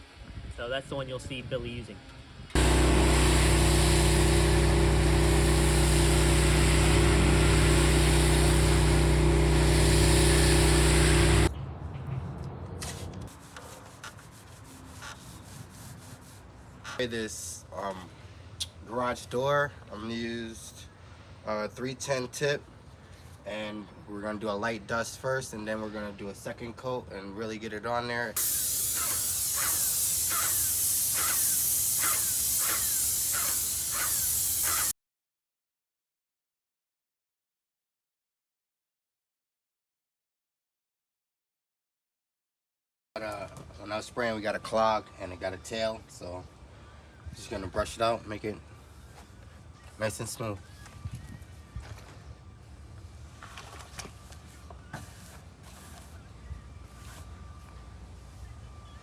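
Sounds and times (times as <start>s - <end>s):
pressure washer motor drone: 2.6s - 11.5s, 28.4s - 34.9s
water spraying hiss: 2.6s - 11.5s, 28.4s - 34.9s.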